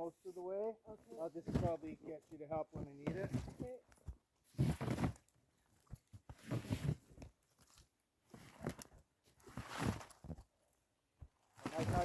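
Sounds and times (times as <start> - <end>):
crunching and rustling handling: 11.3 - 12.0.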